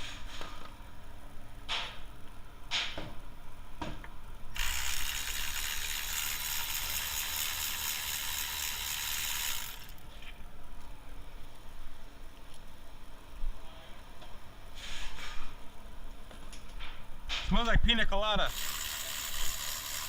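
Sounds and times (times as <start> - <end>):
ratchet wrench ratcheting: 4.6 - 10.0, 18.5 - 20.0.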